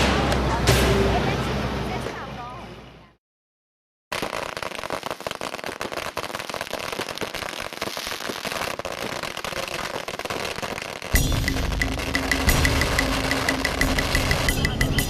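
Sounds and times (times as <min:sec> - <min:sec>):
firecrackers crackling: 0:04.1 - 0:15.0.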